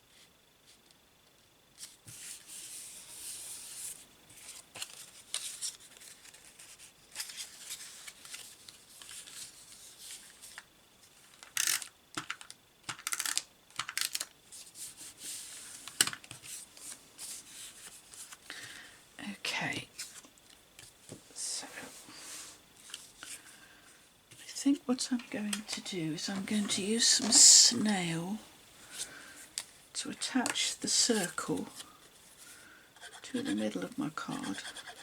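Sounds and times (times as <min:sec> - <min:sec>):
paper rustling on a surface: 0:01.8 - 0:10.7.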